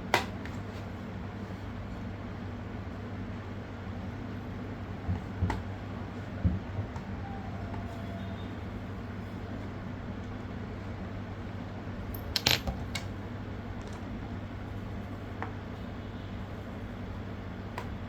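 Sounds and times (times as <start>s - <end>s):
metal screws clinking on hard surface: 12.1s - 12.8s
screwdriver clicking: 12.2s - 12.7s.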